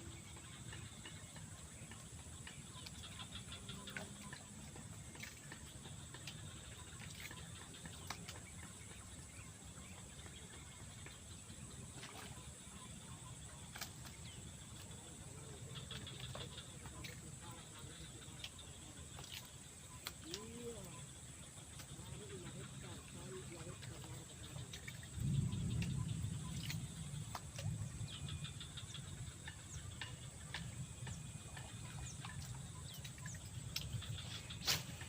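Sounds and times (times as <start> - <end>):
low rumble: 24.2 - 34.6.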